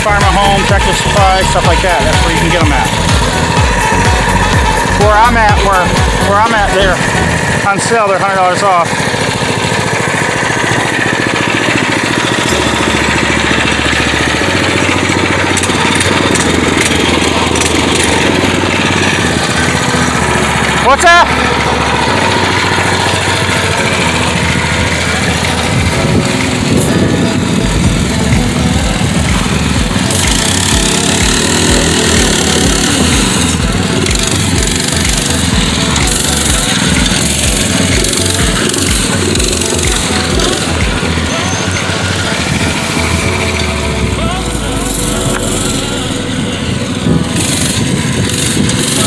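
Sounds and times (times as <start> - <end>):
mini bike engine running: 0.0 - 49.0.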